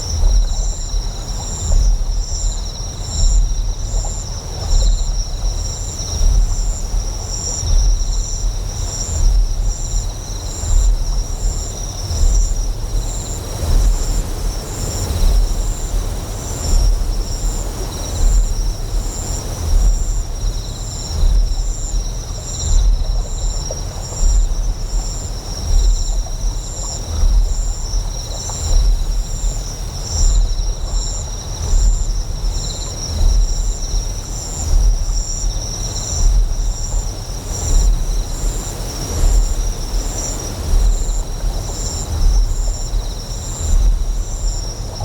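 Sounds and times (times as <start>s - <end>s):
insects chirping: 0.0s - 45.0s
flowing water hissing: 11.1s - 21.8s.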